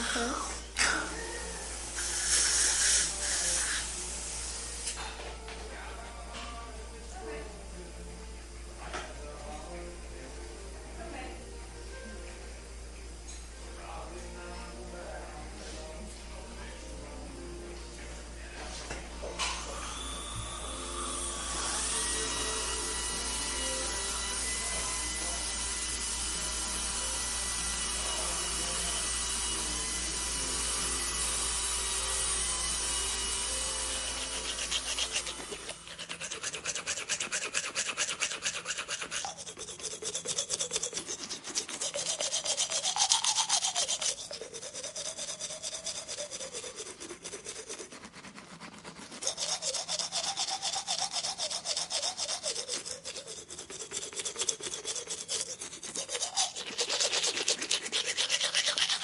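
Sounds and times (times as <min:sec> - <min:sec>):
rapid scraping strokes: 0:33.4 - 0:59.0.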